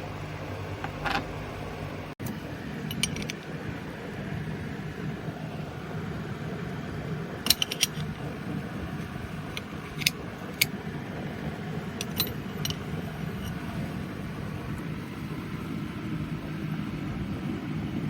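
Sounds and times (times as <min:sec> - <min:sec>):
electric fan humming: 0:00.0 - 0:18.0
metal tools clinking: 0:00.8 - 0:01.3, 0:02.9 - 0:03.4, 0:07.5 - 0:08.2, 0:09.0 - 0:10.7, 0:12.0 - 0:13.6.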